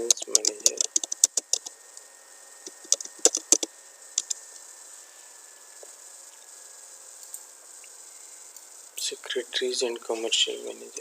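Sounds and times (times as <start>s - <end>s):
faint high-pitched hiss: 0.0s - 11.0s
computer keyboard taps: 0.1s - 1.7s, 2.7s - 4.3s.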